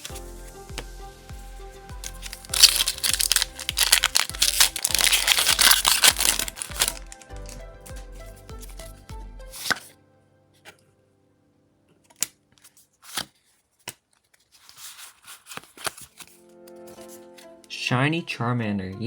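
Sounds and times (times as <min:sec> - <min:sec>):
music with low beat: 0:00.1 - 0:09.6
foil wrapper tearing and crinkling: 0:02.0 - 0:07.6, 0:09.6 - 0:09.9, 0:12.2 - 0:16.4.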